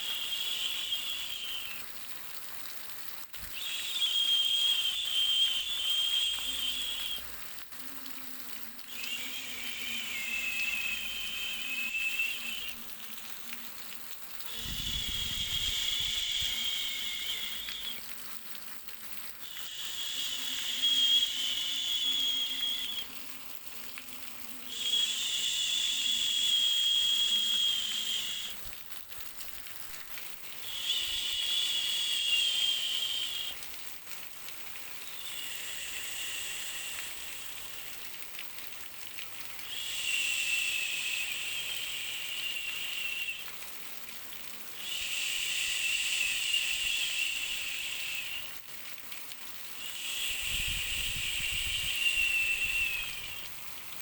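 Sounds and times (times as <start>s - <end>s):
hissing shh white noise: 0.0s - 54.0s.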